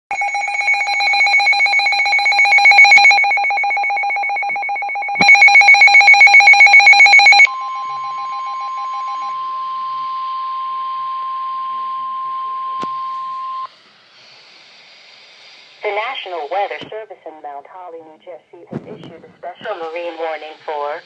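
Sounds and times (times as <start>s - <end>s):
steady single-pitch tone: 0.1s - 13.7s
pulsing electronic alert tone: 0.2s - 10.6s
faint hiss: 13.7s - 17.2s.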